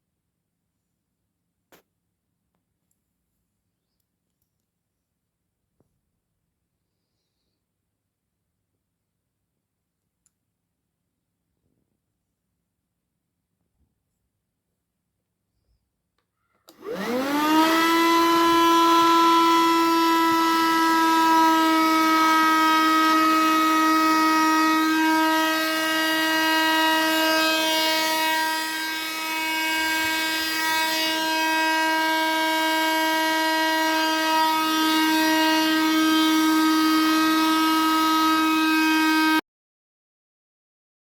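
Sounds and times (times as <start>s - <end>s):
vacuum cleaner motor whining: 16.7s - 39.4s.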